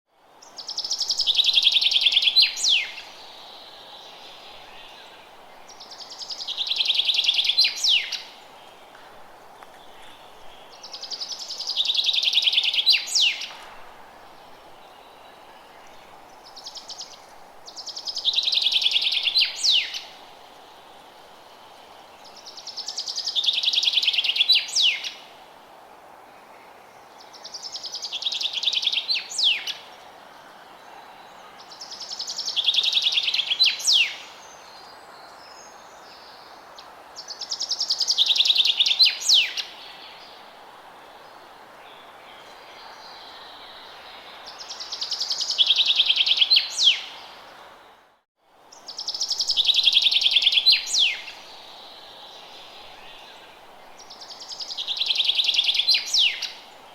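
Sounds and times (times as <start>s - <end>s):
steady background hiss: 0.1s - 56.9s
songbird trilling: 54.4s - 56.6s.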